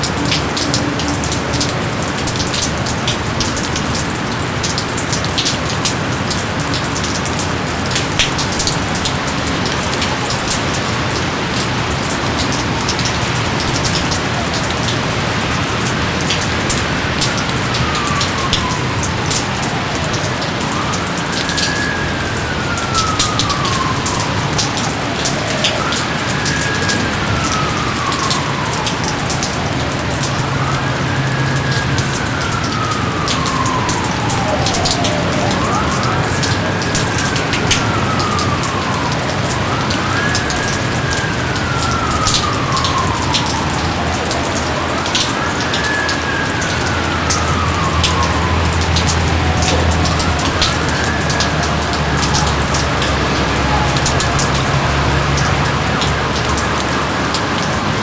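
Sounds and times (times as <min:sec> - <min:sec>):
heavy rain with drips: 0:00.0 - 0:58.0
wailing siren tone: 0:00.0 - 0:58.0.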